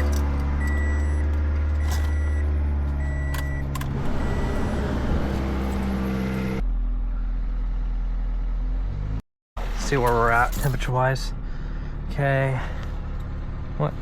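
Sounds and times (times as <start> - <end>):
dashboard warning chime beeping: 0.6 - 5.7.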